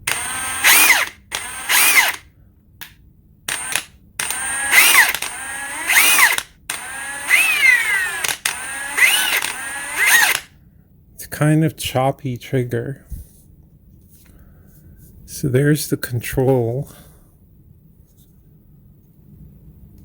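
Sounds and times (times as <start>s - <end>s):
impact wrench motor whine: 0.0s - 2.2s, 3.5s - 10.5s.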